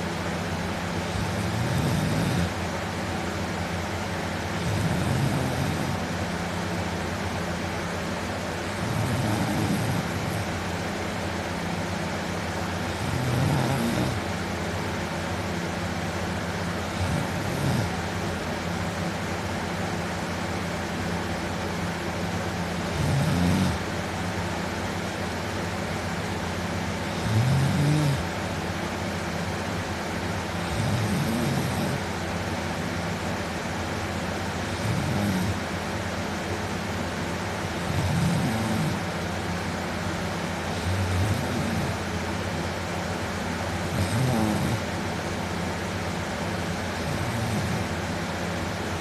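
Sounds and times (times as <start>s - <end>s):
steady low hum: 0.0s - 49.0s
man snoring loudly: 1.0s - 2.6s, 4.6s - 6.1s, 8.7s - 10.6s, 12.8s - 14.3s, 16.8s - 18.0s, 22.6s - 23.9s, 27.0s - 28.4s, 30.5s - 32.1s, 34.6s - 35.7s, 37.6s - 39.1s, 40.7s - 42.2s, 43.7s - 44.9s, 46.6s - 48.1s.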